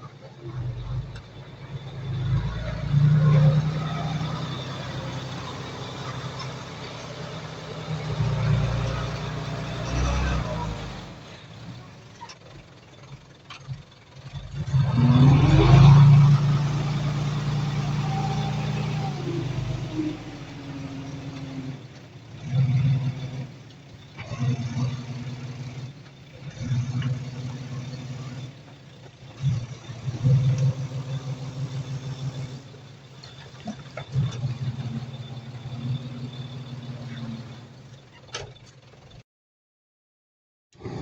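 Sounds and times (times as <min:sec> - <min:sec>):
heavy diesel engine revving: 0:00.0 - 0:38.2.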